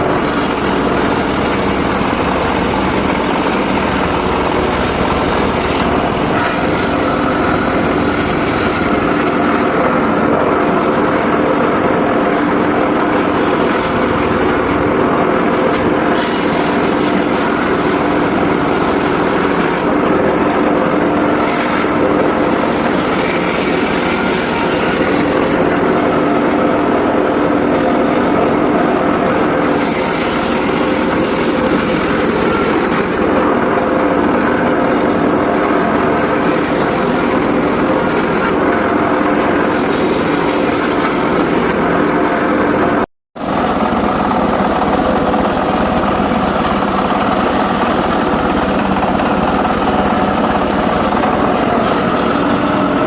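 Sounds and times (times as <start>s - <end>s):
circular saw cutting wood: 0.0s - 42.8s, 43.4s - 53.0s.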